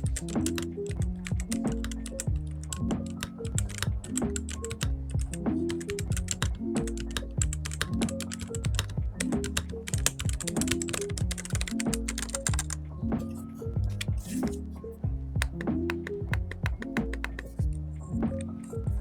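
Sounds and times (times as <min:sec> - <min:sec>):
mechanical keyboard typing: 0:00.0 - 0:12.8, 0:15.4 - 0:19.0
background music: 0:00.0 - 0:19.0.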